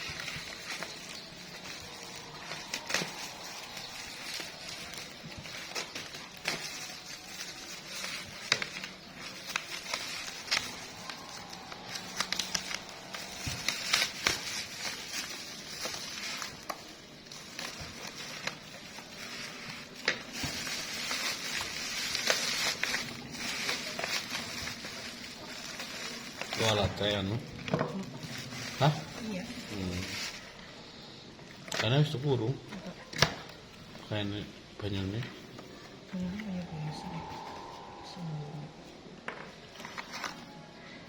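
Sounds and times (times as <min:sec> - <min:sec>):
packaging crinkling and rustling: 0:00.0 - 0:30.8, 0:31.4 - 0:38.0, 0:38.8 - 0:41.0.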